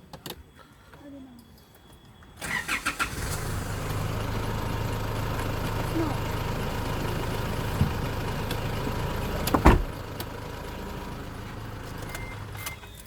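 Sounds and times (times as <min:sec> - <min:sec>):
engine idling: 0:02.4 - 0:13.0
loud thump: 0:09.5 - 0:10.0.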